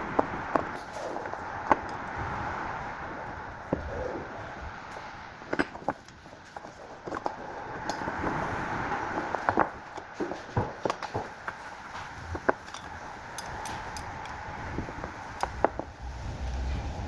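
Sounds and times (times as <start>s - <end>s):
tools clicking and knocking: 12.4s - 14.5s.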